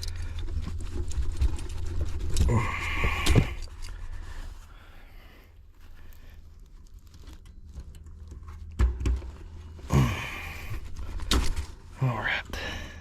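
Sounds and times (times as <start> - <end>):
knocks and clatters of parts: 0.0 - 4.2, 6.6 - 12.0
low steady hum: 0.0 - 13.0
rustling of hands handling parts: 0.0 - 13.0.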